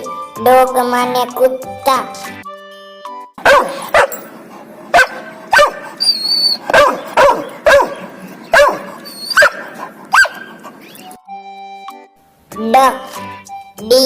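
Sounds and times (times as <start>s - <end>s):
dog barking: 3.4s - 4.3s, 4.9s - 10.8s.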